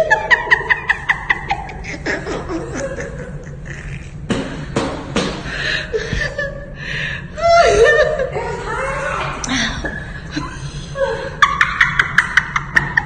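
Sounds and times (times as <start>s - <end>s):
person laughing: 0.0s - 4.3s, 7.4s - 8.6s.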